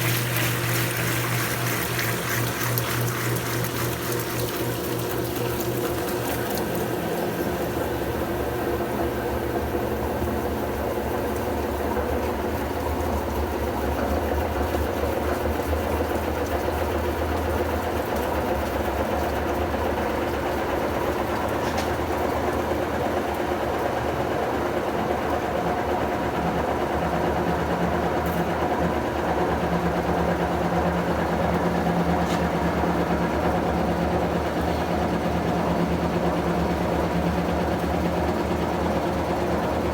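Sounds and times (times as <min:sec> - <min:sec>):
washing machine motor hum: 0:00.0 - 0:39.9.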